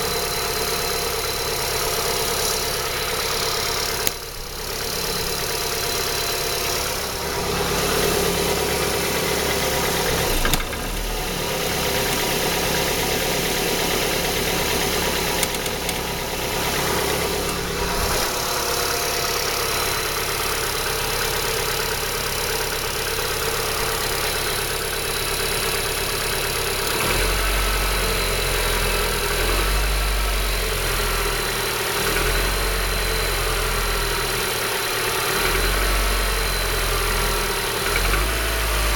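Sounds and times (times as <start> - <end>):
car engine running with knock: 0.0 - 27.3.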